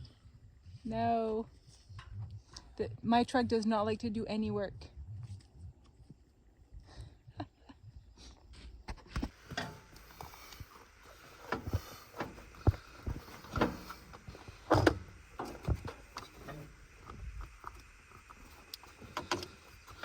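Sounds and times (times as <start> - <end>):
knocks and clunks: 8.9 - 17.6.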